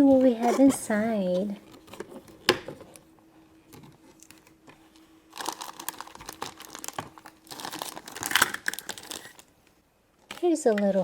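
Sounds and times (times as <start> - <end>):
toy packaging crinkling: 5.3 - 9.5.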